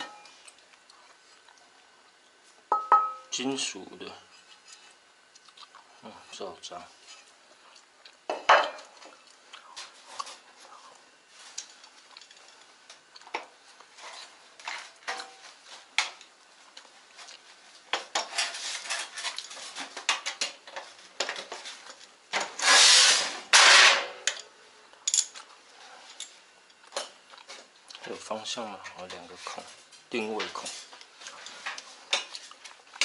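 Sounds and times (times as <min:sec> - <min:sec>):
loud rubbing scraping noises: 0:22.6 - 0:24.0.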